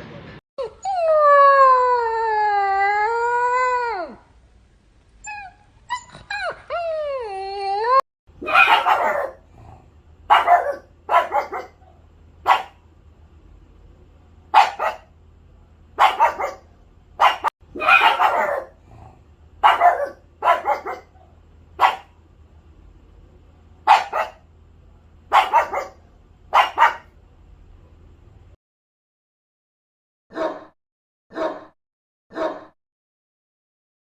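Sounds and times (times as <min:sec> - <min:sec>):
faint low hum: 0:00.0 - 0:28.6
dog barking: 0:08.4 - 0:09.5, 0:10.3 - 0:12.8, 0:14.5 - 0:15.1, 0:16.0 - 0:18.8, 0:19.6 - 0:22.2, 0:23.9 - 0:24.4, 0:25.3 - 0:27.1, 0:30.3 - 0:32.8.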